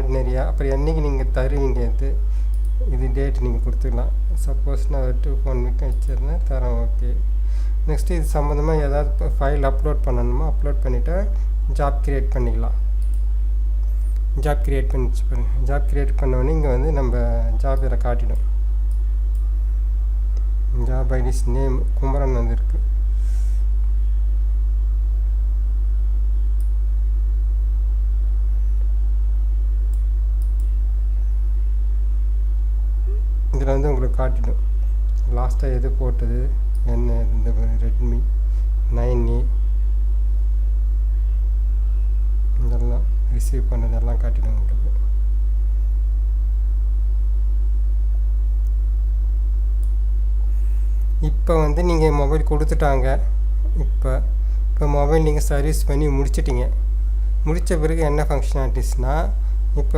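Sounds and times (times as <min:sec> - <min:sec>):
electrical mains hum: 0:00.0 - 0:59.9
faint clicks: 0:02.5 - 0:02.8, 0:13.0 - 0:14.3, 0:29.9 - 0:30.8
faint mouse clicks: 0:02.5 - 0:02.8.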